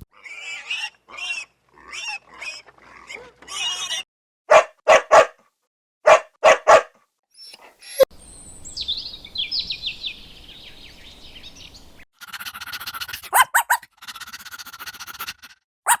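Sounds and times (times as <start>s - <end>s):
dog barking: 4.5s - 5.4s, 6.0s - 8.0s, 13.2s - 13.9s
high falling animal squeaks: 7.4s - 8.1s
rapid animal chattering calls: 12.2s - 16.0s.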